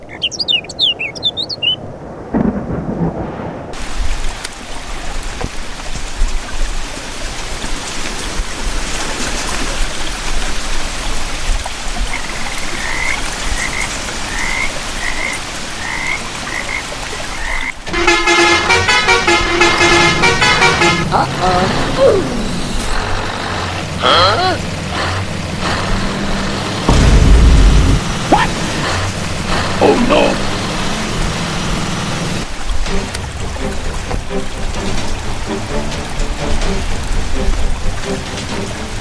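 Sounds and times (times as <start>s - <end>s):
thunder rumble: 1.8s - 5.1s, 26.8s - 29.8s
rain falling: 1.8s - 39.0s
frogs croaking: 11.9s - 17.9s.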